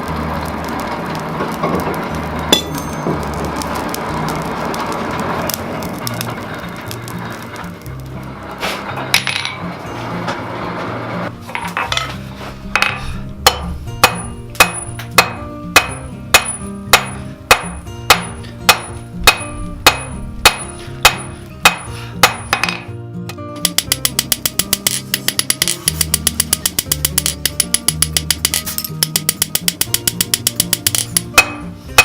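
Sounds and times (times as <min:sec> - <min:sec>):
background music: 0:00.0 - 0:32.0
hammer blows on anvil: 0:12.8 - 0:22.9, 0:23.6 - 0:32.0.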